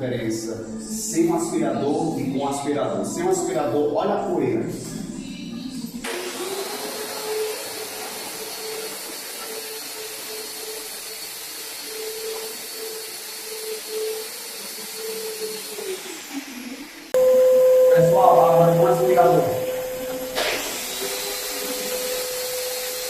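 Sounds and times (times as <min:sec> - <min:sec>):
electric sander whining: 0:06.1 - 0:23.0.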